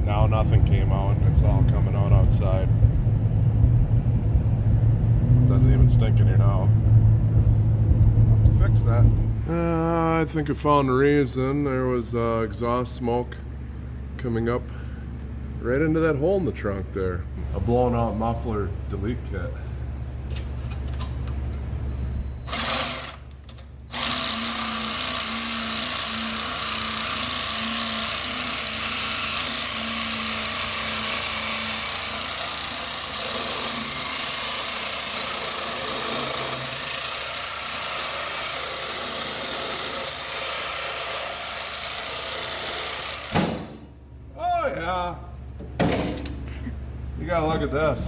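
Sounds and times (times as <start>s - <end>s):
low steady hum: 0.0s - 24.0s, 43.5s - 48.0s.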